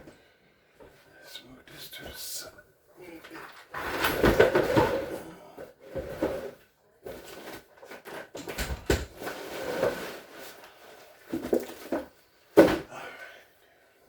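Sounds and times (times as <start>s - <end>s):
refrigerator parts clattering: 3.2s - 5.2s, 7.1s - 10.5s.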